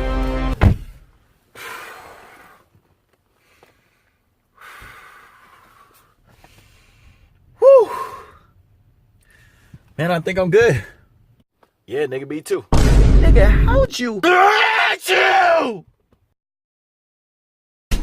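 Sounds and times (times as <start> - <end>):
background music: 0.0 - 0.6
person gasping inhales: 3.4 - 8.5, 9.2 - 9.8.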